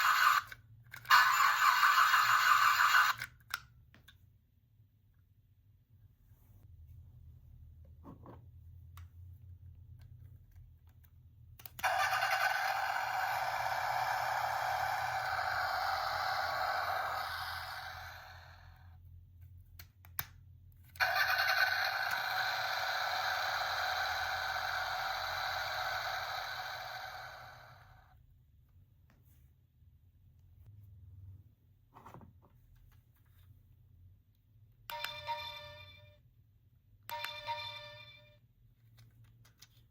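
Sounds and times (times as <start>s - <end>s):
toy playing car engine sound: 0.0s - 3.3s, 11.6s - 18.8s, 21.0s - 28.1s
toy click: 0.0s - 3.7s, 11.6s - 18.6s, 21.0s - 27.9s, 34.9s - 35.4s, 37.1s - 37.7s.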